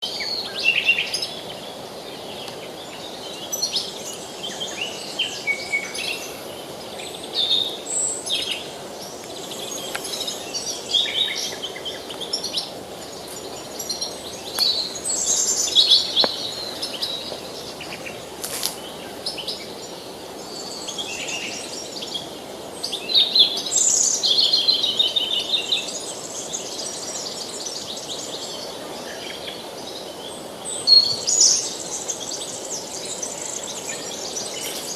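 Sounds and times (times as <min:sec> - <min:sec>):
river rushing: 0:00.0 - 0:34.9
songbirds singing and calling: 0:00.0 - 0:34.9.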